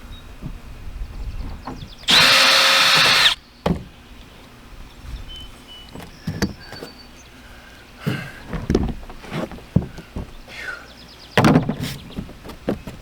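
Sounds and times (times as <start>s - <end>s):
heavy thumps: 2.1s - 3.4s
knocks and clunks on roof: 8.1s - 10.4s, 11.4s - 13.0s.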